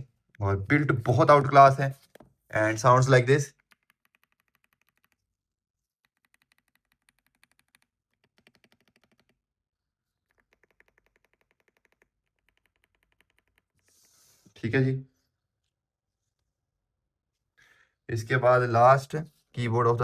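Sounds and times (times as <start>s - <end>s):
mechanical keyboard typing: 3.5s - 5.3s, 6.0s - 9.4s, 10.3s - 13.7s.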